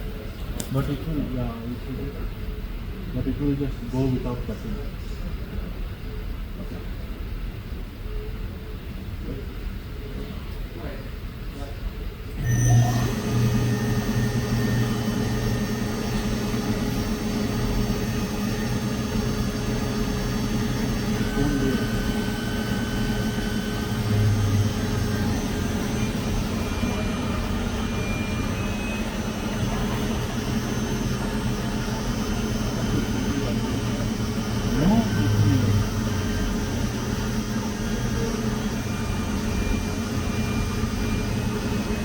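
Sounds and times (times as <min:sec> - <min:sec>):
lathe motor hum and whine: 0:12.3 - 0:42.0.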